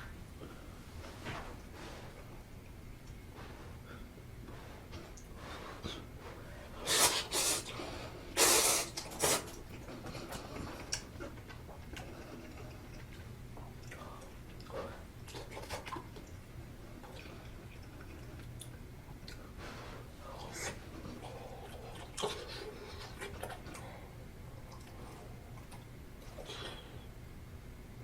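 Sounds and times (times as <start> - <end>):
faint low hum: 0.0 - 28.0
person chewing food: 8.8 - 19.6, 20.3 - 27.0.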